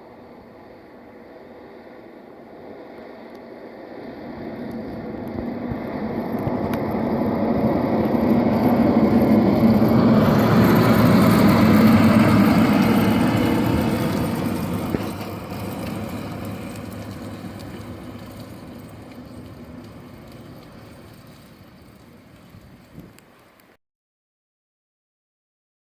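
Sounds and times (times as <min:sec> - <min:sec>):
truck engine passing: 0:03.9 - 0:23.6.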